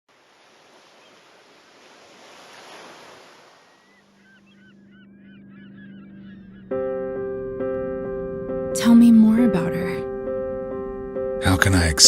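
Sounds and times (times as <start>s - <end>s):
sea waves washing in: 0.1s - 4.2s
birds chirping: 0.2s - 9.6s.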